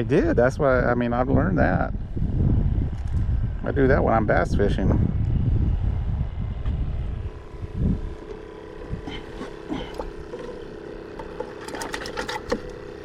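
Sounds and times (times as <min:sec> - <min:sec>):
wind rumbling on microphone: 0:00.0 - 0:10.8
steady motor hum: 0:00.0 - 0:13.0.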